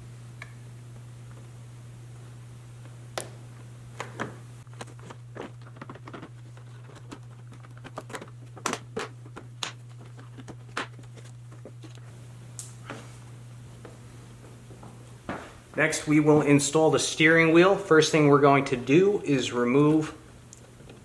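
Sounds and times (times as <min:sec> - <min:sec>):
steady low hum: 0:00.0 - 0:21.0
plastic parts clicking and knocking: 0:04.0 - 0:12.0.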